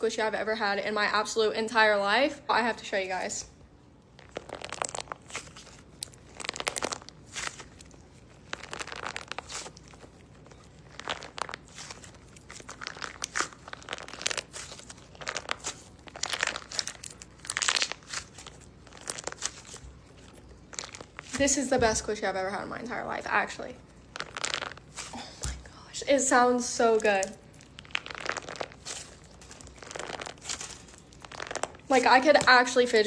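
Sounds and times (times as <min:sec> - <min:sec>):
squishy toy crinkling crackles: 0:04.0 - 0:21.4, 0:23.8 - 0:25.6, 0:27.0 - 0:33.0.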